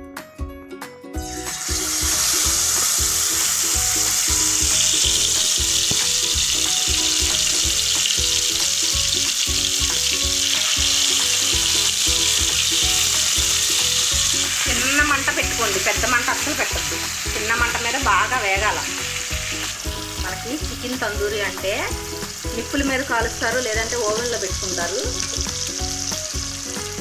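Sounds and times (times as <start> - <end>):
chicken sizzling in hot oil: 1.2 - 27.0.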